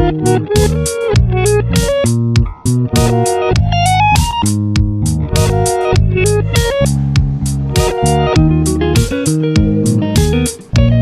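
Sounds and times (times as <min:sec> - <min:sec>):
guitar music with steady beat: 0:00.0 - 0:11.0.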